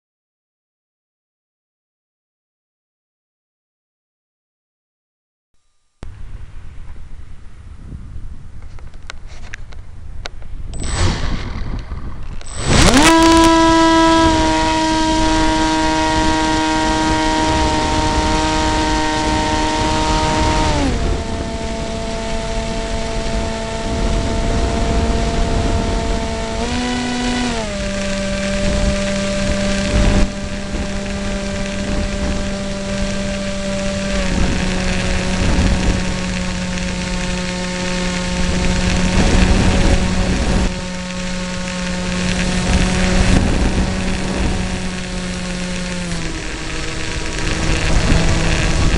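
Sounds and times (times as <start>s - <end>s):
model plane electric motor whining: 10.7s - 48.9s.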